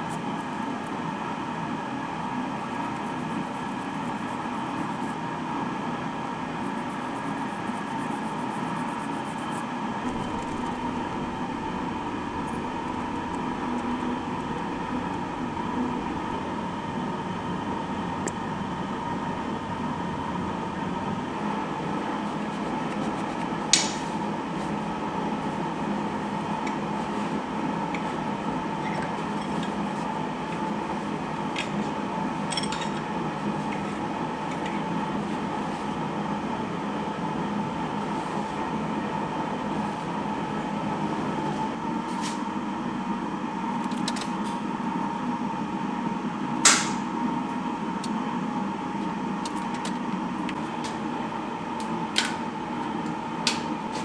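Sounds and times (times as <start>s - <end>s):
machine humming: 9.8s - 42.0s
sharp click: 46.7s - 47.1s.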